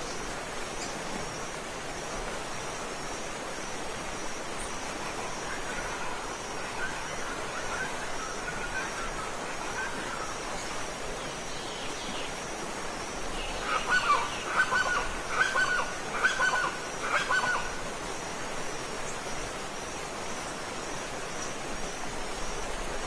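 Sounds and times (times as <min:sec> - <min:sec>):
waterfall rushing: 0:00.0 - 0:23.0
bird honking: 0:13.6 - 0:17.7.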